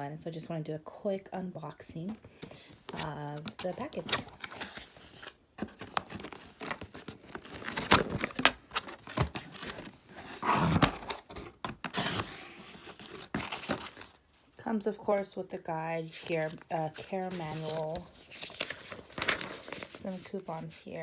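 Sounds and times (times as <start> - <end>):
packaging crinkling and rustling: 2.1 - 14.6, 16.1 - 20.7
package tearing: 2.9 - 14.2.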